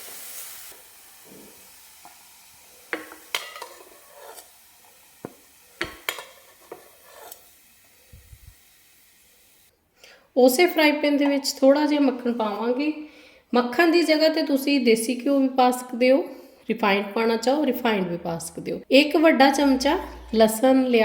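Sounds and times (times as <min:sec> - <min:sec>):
butter sizzling: 0:00.0 - 0:09.7
utensil scraping frying pan: 0:02.7 - 0:08.1.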